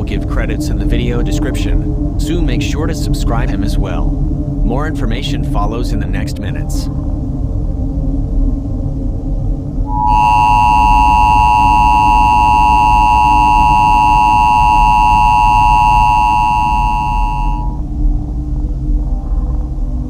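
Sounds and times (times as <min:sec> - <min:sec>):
low rumbling drone: 0:00.0 - 0:20.0
two-tone electronic alert tone: 0:09.9 - 0:17.8.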